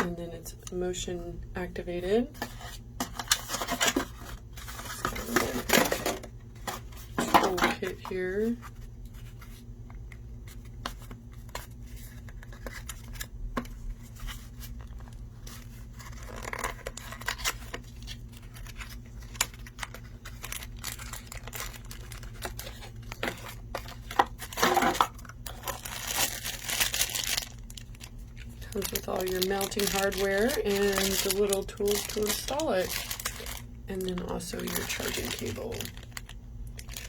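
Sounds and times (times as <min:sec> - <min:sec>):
low steady hum: 0:00.0 - 0:37.0
plastic packaging crinkling: 0:03.1 - 0:09.6, 0:14.0 - 0:37.0.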